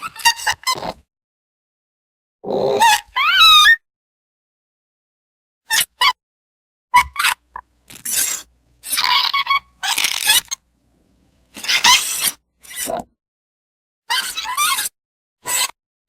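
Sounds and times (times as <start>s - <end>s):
creature squeaks and squeals: 2.5s - 3.8s, 5.7s - 6.2s, 8.0s - 10.6s, 11.6s - 13.0s, 14.1s - 15.8s.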